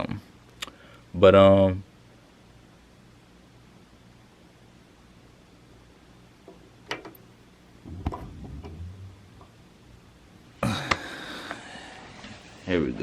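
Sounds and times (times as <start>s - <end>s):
low knocking: 7.8s - 10.5s.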